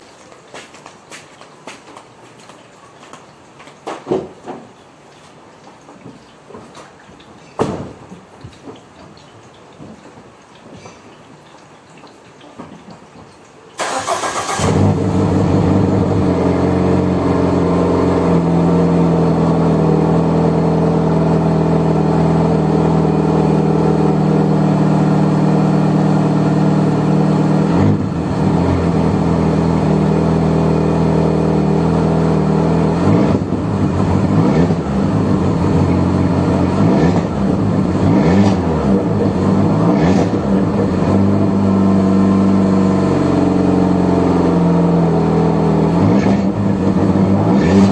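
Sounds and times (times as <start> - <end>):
car engine rumbling at idle: 13.8 - 47.9
engine revving: 13.8 - 47.9.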